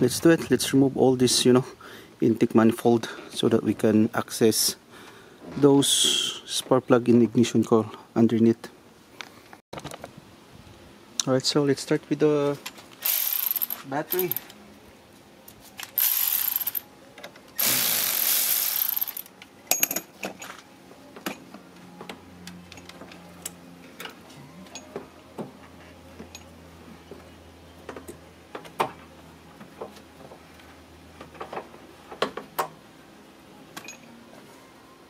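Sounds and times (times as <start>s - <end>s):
ratchet wrench spinning: 13.0s - 14.4s, 16.0s - 16.9s, 17.6s - 19.3s
tools and metal parts clinking: 13.0s - 14.6s, 15.8s - 17.4s, 18.2s - 20.7s, 26.2s - 26.6s, 33.8s - 34.2s.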